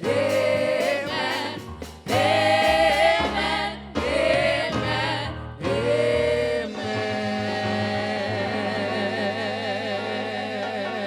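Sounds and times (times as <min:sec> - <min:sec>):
gospel choir singing: 0:00.0 - 0:11.0.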